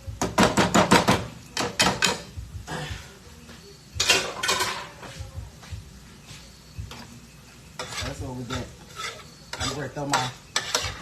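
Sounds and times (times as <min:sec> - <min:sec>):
utensil scraping a frying pan: 0:06.9 - 0:11.0.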